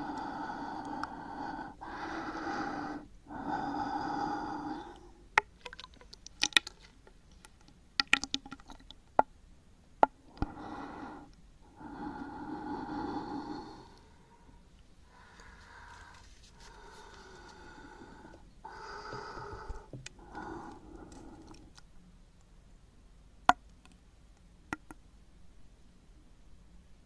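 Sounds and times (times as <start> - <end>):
close breathing: 0.0 - 5.9, 10.2 - 21.8
small sharp clicks and pops: 5.4 - 9.3, 23.5 - 25.0.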